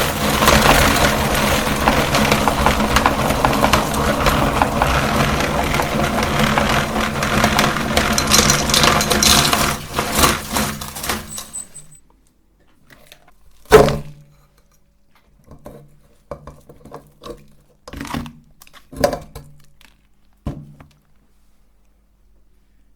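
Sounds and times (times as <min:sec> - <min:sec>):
meat grinder crunching candy: 0:00.0 - 0:11.8.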